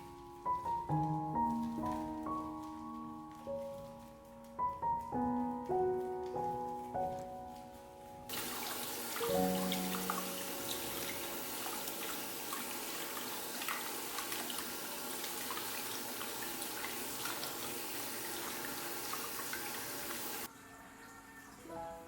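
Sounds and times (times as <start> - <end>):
water running with splashes: 8.3 - 20.5.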